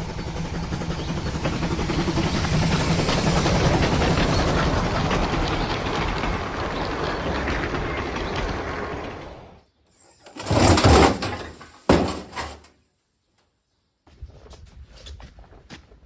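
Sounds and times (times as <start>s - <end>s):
model train wheels clicking on rails: 0.0s - 9.4s, 10.0s - 12.7s.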